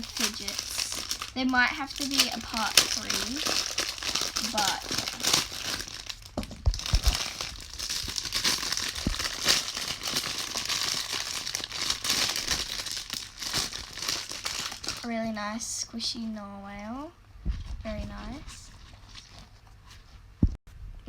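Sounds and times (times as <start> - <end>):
plastic packaging crinkling: 0.0 - 15.2
soft handling thumps: 17.4 - 20.6.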